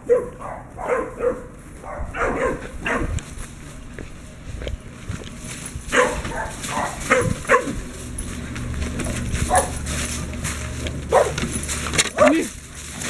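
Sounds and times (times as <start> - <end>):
puppy barking: 0.0 - 3.2, 5.9 - 8.2, 9.3 - 10.2, 11.0 - 12.5.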